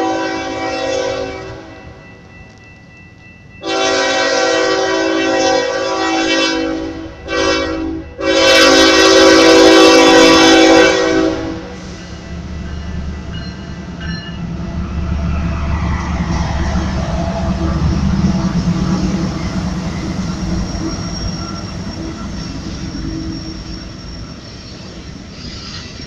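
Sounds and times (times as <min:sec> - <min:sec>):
locomotive air horn blasts: 0:00.0 - 0:01.7, 0:03.6 - 0:12.0
train rumbling: 0:00.0 - 0:26.0.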